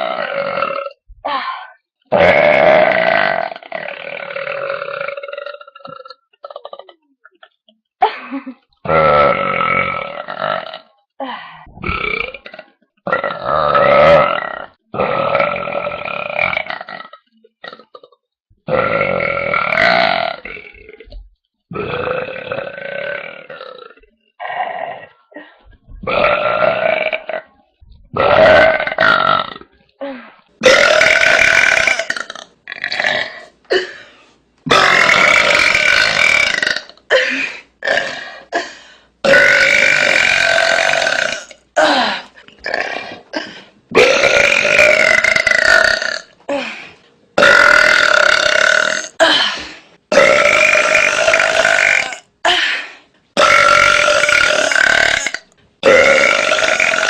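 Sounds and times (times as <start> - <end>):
woman belching loudly: 2.1 - 7.0, 26.0 - 27.5, 28.2 - 29.7, 30.6 - 33.8, 34.7 - 38.2, 39.2 - 43.2, 43.9 - 46.3, 47.4 - 49.5, 50.1 - 52.3, 53.4 - 57.0.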